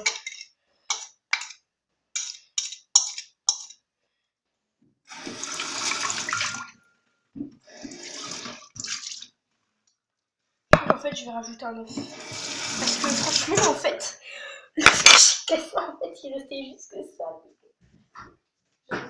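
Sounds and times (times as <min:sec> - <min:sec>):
kitchen tap running: 0:05.1 - 0:06.7, 0:07.7 - 0:09.3, 0:12.0 - 0:13.8.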